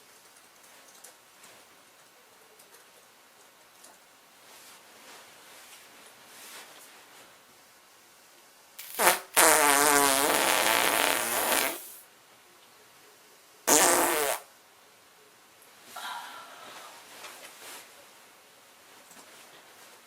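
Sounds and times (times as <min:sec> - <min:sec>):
farts: 0:08.8 - 0:12.0, 0:13.7 - 0:14.5.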